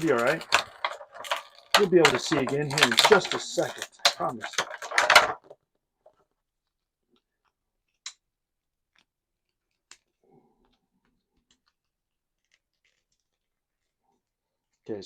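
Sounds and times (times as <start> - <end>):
sharp plastic clicks: 0.0 - 5.6
plastic figure clicks and rustles: 0.0 - 8.2.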